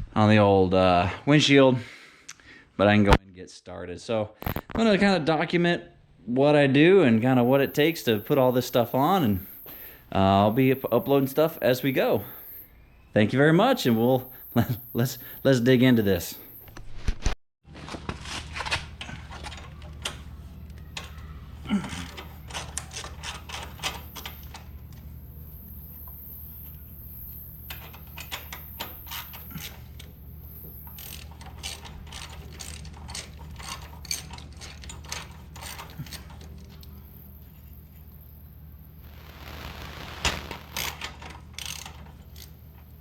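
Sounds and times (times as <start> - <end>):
ratchet wrench clicking: 30.8 - 36.5, 40.8 - 42.6.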